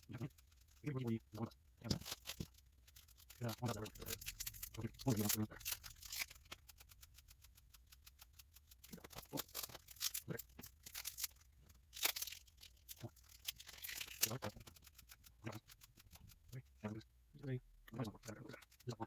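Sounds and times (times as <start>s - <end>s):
wax paper wrappers tearing: 1.8s - 6.9s, 8.8s - 15.8s.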